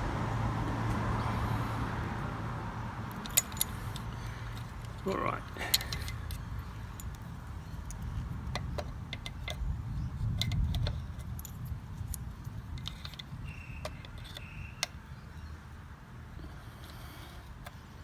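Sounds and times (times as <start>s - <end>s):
small metallic clicks and clinks: 3.1s - 15.0s.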